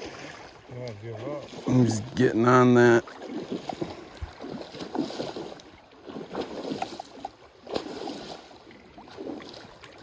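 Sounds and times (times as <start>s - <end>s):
stream water splashing: 0.0s - 10.0s.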